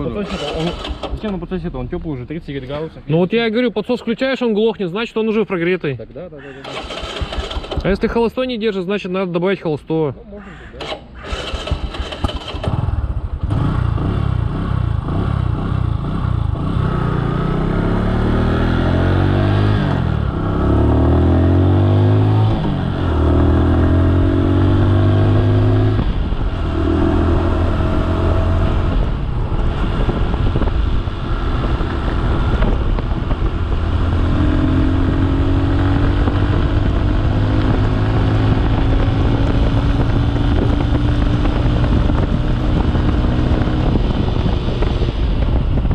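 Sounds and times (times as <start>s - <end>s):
motorcycle engine running: 20.0s - 45.9s.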